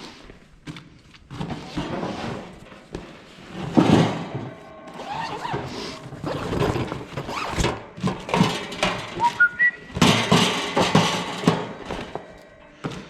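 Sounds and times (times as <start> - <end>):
bag crinkling and rustling: 4.7 - 7.8.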